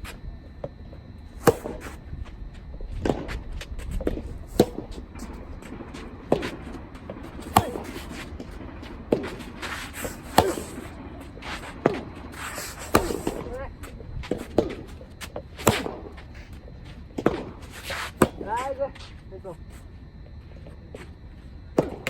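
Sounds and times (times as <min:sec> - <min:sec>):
wind rumble on microphone: 0:00.0 - 0:09.6, 0:10.2 - 0:15.2
rackets hitting ball: 0:03.0 - 0:18.8, 0:21.8 - 0:22.0.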